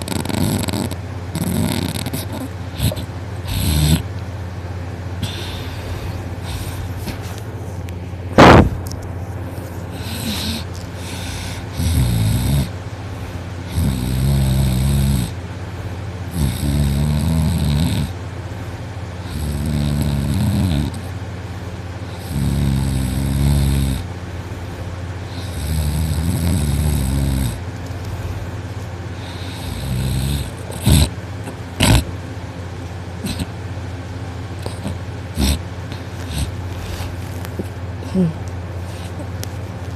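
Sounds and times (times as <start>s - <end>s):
person snoring heavily: 0.0s - 4.1s, 5.2s - 7.0s, 9.9s - 12.8s, 13.6s - 15.4s, 16.3s - 18.2s, 19.2s - 21.0s, 22.1s - 24.1s, 25.3s - 27.6s, 29.2s - 32.1s, 33.2s - 33.5s, 34.6s - 37.1s, 38.0s - 39.2s
sharp knock: 8.4s - 8.7s.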